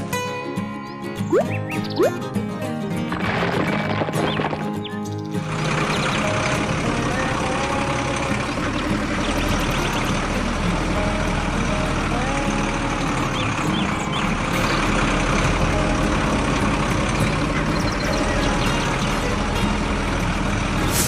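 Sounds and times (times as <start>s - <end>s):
short high chirps: 1.3s - 2.2s
vehicle engine running: 1.6s - 21.0s.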